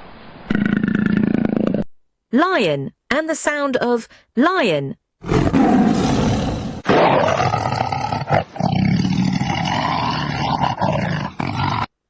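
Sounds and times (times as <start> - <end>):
lion roaring: 5.2 - 11.9.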